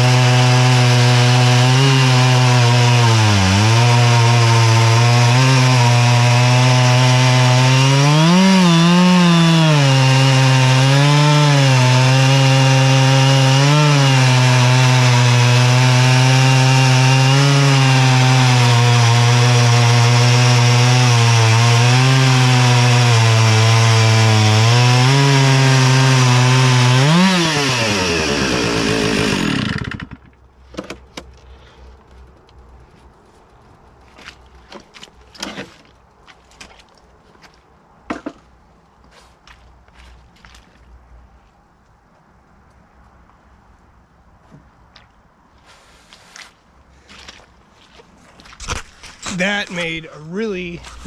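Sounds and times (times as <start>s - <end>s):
chainsaw cutting through log: 0.0s - 30.3s, 48.6s - 51.0s.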